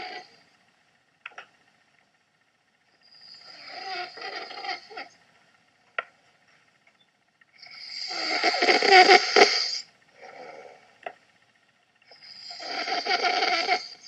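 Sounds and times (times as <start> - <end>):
man snoring: 0.0 - 0.4, 3.0 - 5.1, 7.6 - 10.9, 12.1 - 14.0
soft breath: 10.2 - 11.0.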